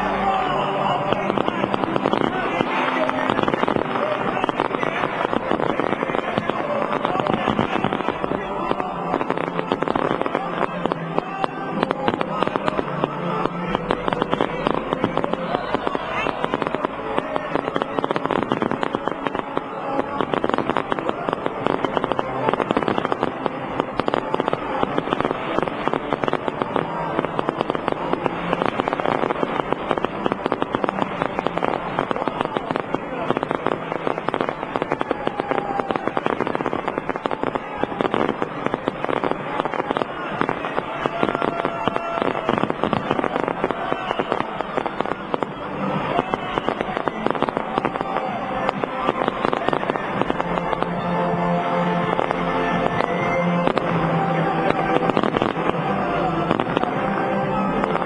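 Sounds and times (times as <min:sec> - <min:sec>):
crowd voices: 0:00.0 - 0:58.0
fireworks crackling and popping: 0:00.0 - 0:58.0.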